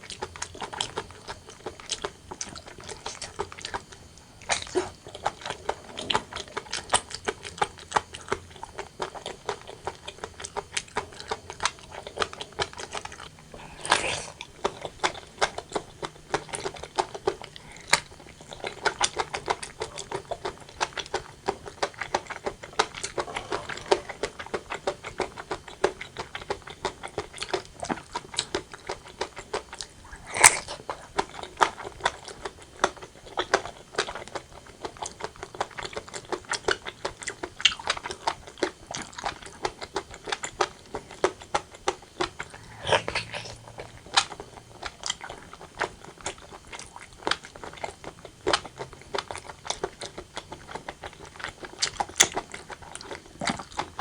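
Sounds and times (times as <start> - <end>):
wet chewing and smacking: 0.0 - 54.0
sharp mouth clicks: 42.5 - 44.6.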